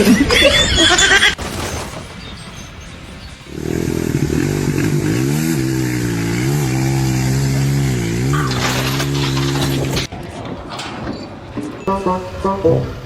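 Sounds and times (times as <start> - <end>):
engine running: 1.4 - 10.9.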